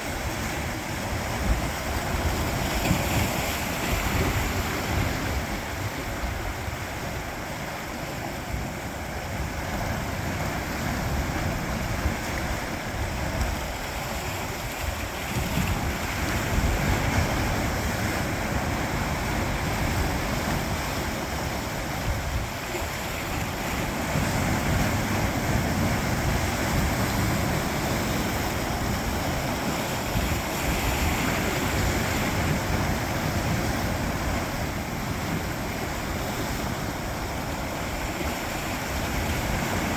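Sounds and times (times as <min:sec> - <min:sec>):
sea waves against rocks: 0:00.0 - 0:39.9
wind buffeting microphone: 0:00.0 - 0:39.9.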